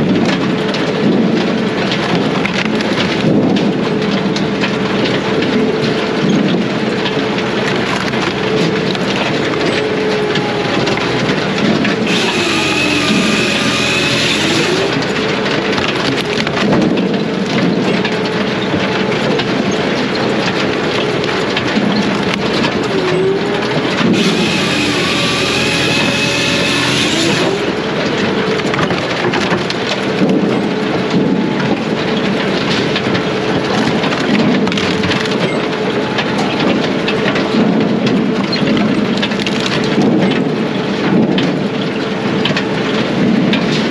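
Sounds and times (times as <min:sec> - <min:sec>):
diesel firewood processor running: 0:00.0 - 0:43.9
chainsaw cutting through log: 0:10.7 - 0:16.9, 0:20.2 - 0:28.6.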